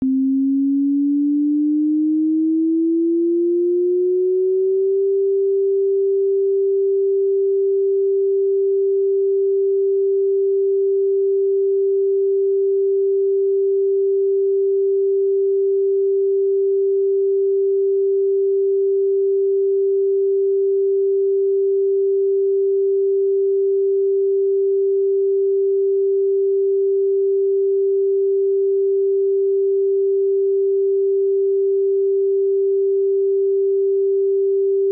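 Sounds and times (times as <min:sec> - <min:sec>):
synthesised siren tone: 0:00.0 - 0:05.9.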